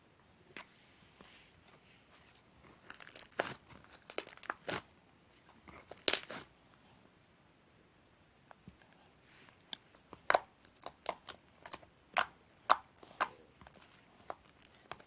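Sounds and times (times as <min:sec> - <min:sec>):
crinkling and crackling: 0:00.5 - 0:06.5, 0:08.5 - 0:15.0.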